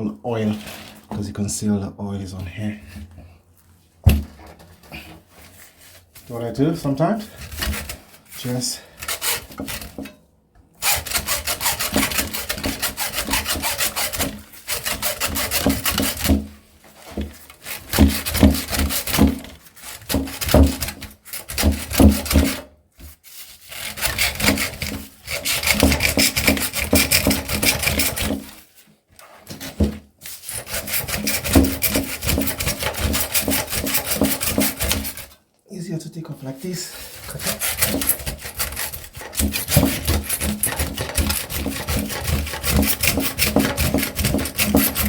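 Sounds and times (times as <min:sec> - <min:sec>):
hand saw cutting copper windings: 0:07.4 - 0:10.2, 0:10.8 - 0:16.4, 0:17.6 - 0:22.6, 0:23.6 - 0:28.5, 0:30.2 - 0:35.4, 0:36.9 - 0:45.0.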